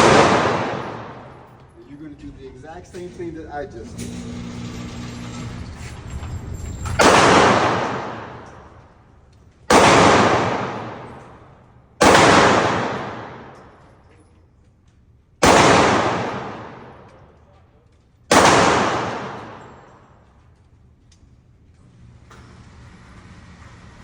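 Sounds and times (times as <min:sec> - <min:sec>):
handgun shots echoing: 0:00.0 - 0:01.6, 0:07.0 - 0:08.8, 0:09.7 - 0:13.7, 0:15.4 - 0:17.4, 0:18.3 - 0:20.1.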